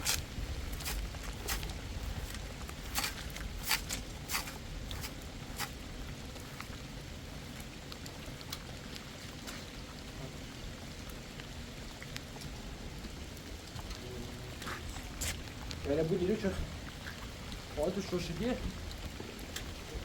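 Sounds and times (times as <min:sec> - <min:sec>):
low wind rumble: 0:00.0 - 0:20.0
steady rain falling: 0:00.0 - 0:20.0.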